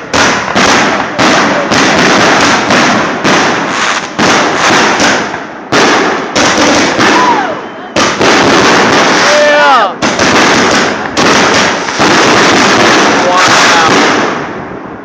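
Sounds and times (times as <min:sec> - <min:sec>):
fireworks bangs: 0:00.0 - 0:15.0
fireworks crackling: 0:00.0 - 0:15.0
falling firework whistle: 0:06.8 - 0:08.2.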